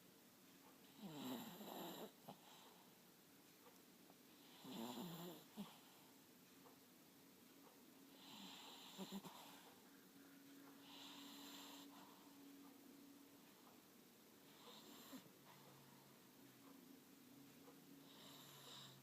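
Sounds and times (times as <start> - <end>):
dog snoring: 0.8 - 2.7, 4.4 - 6.0, 8.1 - 9.7, 10.8 - 12.2, 14.5 - 15.6, 18.0 - 19.0.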